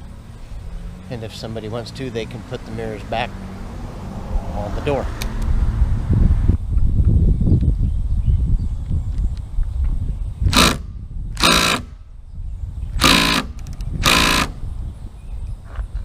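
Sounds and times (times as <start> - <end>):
power driver spinning screws: 10.5 - 10.8, 11.4 - 11.8, 13.0 - 14.6.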